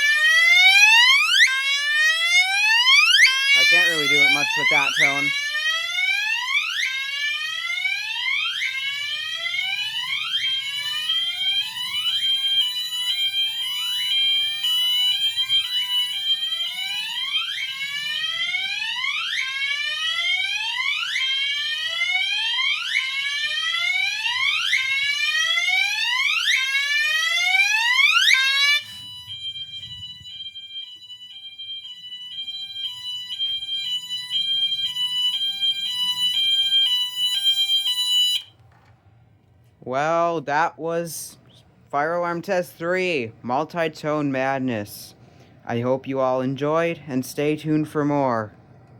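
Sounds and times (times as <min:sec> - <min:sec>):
fire alarm horn two-pitch tone: 0:00.0 - 0:38.6
fire alarm horn whooping: 0:00.0 - 0:38.6.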